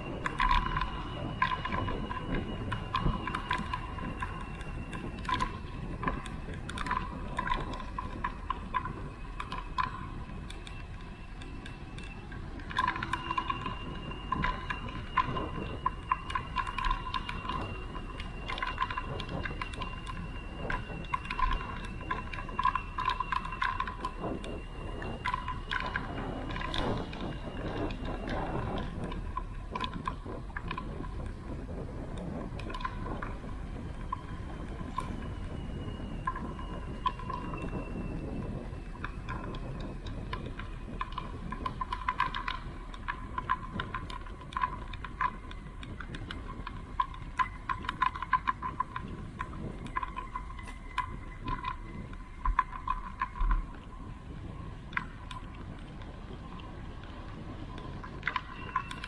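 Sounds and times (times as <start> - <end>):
bicycle rattling and ticking: 0.0 - 59.0.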